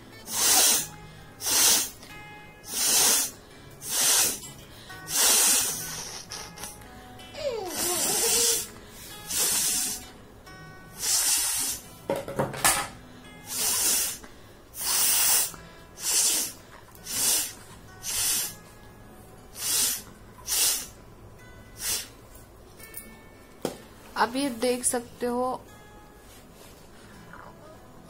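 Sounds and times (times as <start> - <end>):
person blowing air through nose: 0.2 - 6.8, 7.4 - 10.1, 10.9 - 12.0, 13.4 - 18.7, 19.5 - 21.0, 21.7 - 22.2.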